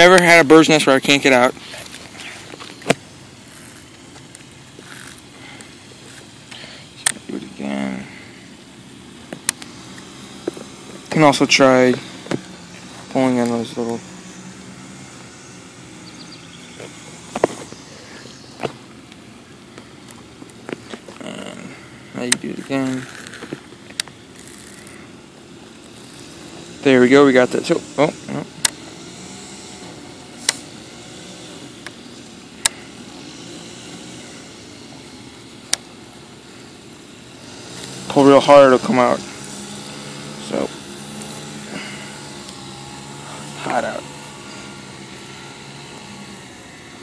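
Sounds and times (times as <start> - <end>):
steady background hiss: 0.0 - 47.0
fishing reel clicks: 3.4 - 7.2, 22.3 - 24.9.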